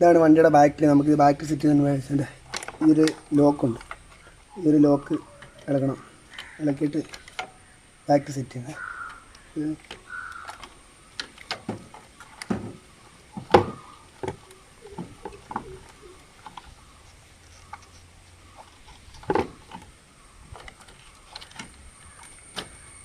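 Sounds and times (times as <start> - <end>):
clicks and knocks of parts: 2.4 - 4.5, 5.1 - 7.6, 8.6 - 16.8, 18.6 - 23.0.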